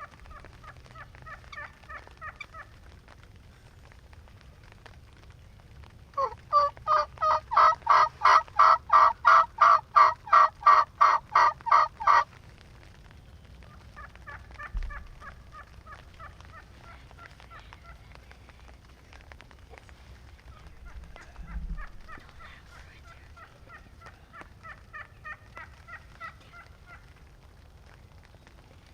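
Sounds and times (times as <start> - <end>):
turkey yelping: 0.0 - 2.8, 6.2 - 12.3, 13.7 - 18.0, 20.5 - 27.2.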